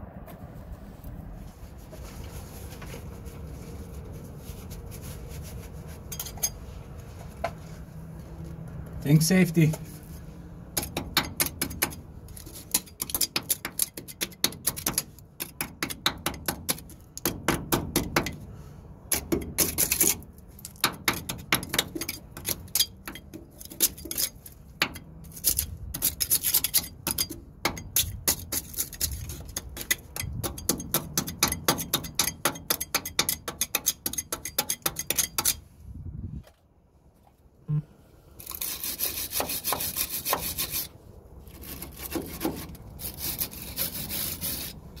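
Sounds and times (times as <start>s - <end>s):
hand tool scraping metal: 6.0s - 6.7s, 19.1s - 35.7s, 38.4s - 44.8s.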